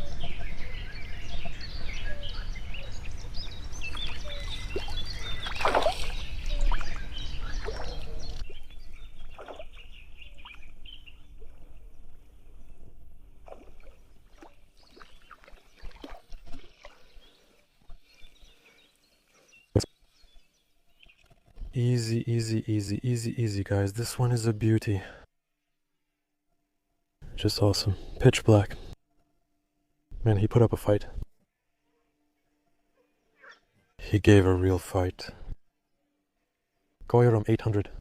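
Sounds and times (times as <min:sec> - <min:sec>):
small birds chirping: 0:00.0 - 0:23.4.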